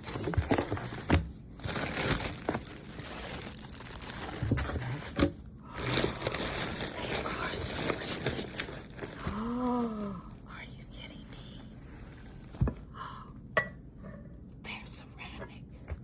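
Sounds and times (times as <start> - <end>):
packaging crinkling and rustling: 0.0 - 9.8.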